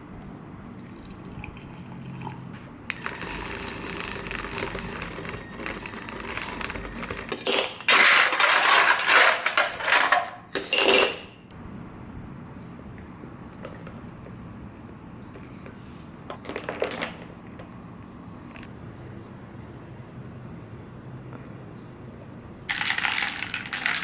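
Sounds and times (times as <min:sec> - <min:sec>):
objects rustling and clinking: 0:05.2 - 0:11.3.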